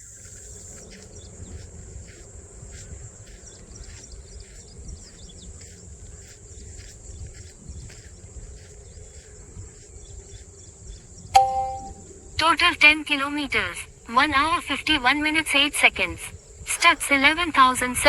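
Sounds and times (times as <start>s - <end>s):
wind rumble on microphone: 0.0s - 11.4s
crickets droning: 0.0s - 18.0s
faint chirps: 8.6s - 12.5s.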